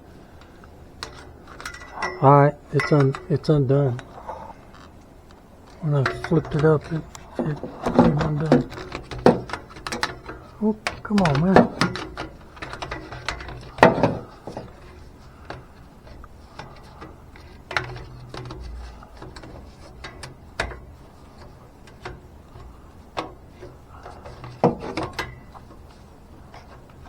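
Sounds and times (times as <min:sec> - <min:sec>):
tools clicking and knocking: 0:01.0 - 0:27.0.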